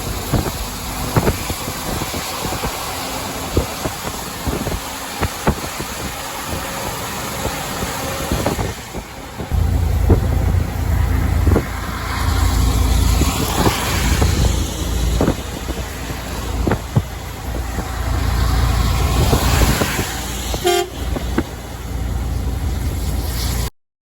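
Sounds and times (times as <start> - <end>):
truck engine and road rumble: 0.0 - 23.8
truck horn toot: 20.6 - 21.2.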